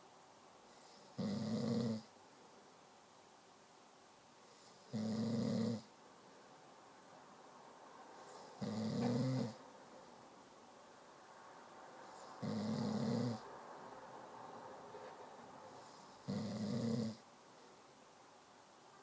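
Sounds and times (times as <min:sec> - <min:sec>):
loud snores: 0:00.8 - 0:02.1, 0:04.6 - 0:05.9, 0:08.5 - 0:09.6, 0:12.4 - 0:13.4, 0:15.8 - 0:17.2
faint breathing: 0:08.2 - 0:09.2, 0:15.6 - 0:16.3.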